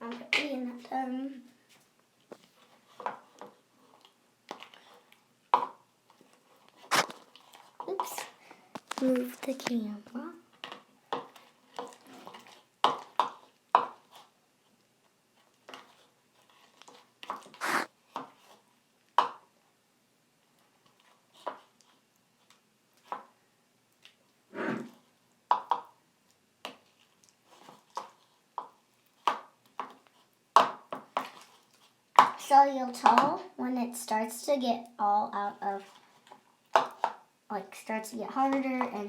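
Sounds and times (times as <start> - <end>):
squelches and clicks: 6.9 - 7.2, 17.6 - 17.9
spoon stirring slime: 17.6 - 17.9.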